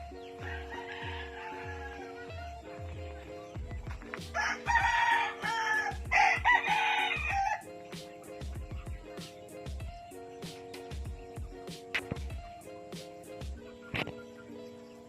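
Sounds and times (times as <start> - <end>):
music with a steady beat: 0.0 - 14.8
rooster crowing loudly: 0.4 - 2.2, 4.4 - 7.6.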